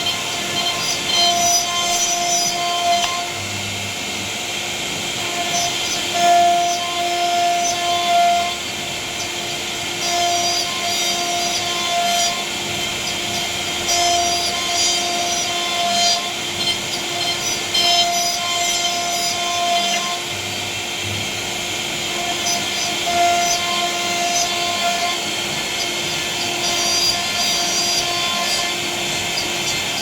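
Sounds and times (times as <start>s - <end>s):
bit cutting wood: 0.0s - 3.4s, 22.0s - 30.0s
router spindle whining: 0.0s - 30.0s.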